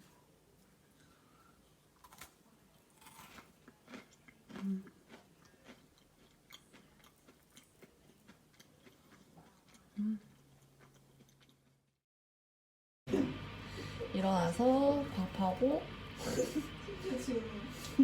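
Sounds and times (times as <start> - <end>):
cookie crunching: 2.0 - 11.8.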